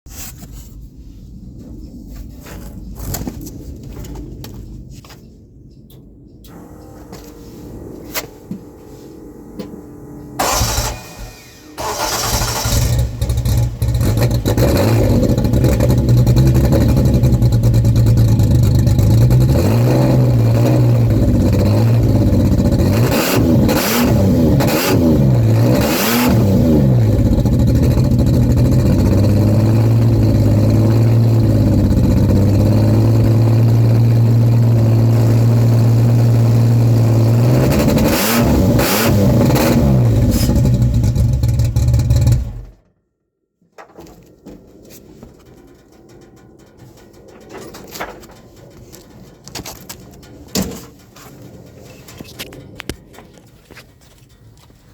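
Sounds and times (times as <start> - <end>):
car engine starting and revving: 6.5 - 42.8.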